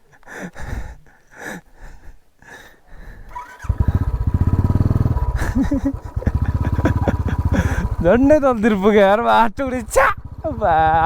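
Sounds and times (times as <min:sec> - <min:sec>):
motorcycle engine starting and running: 0:03.3 - 0:08.8, 0:09.6 - 0:11.0.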